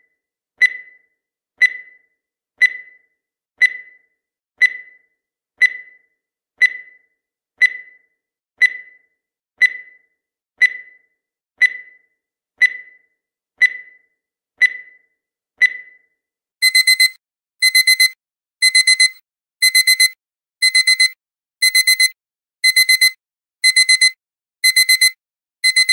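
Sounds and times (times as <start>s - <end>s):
digital alarm clock beeping: 0.6s - 25.9s
short timer beeps: 16.6s - 25.9s.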